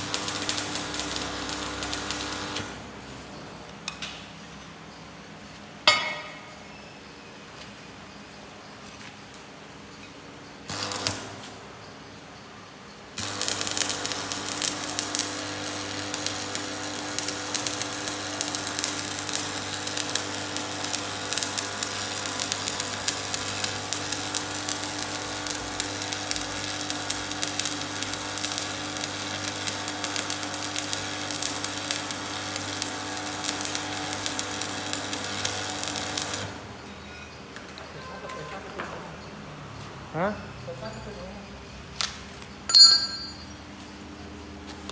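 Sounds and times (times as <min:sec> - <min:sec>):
crackling welding arc: 0:00.0 - 0:02.8, 0:10.7 - 0:11.5, 0:13.2 - 0:36.6
welding machine humming: 0:00.0 - 0:02.9, 0:10.7 - 0:11.4, 0:13.2 - 0:36.7.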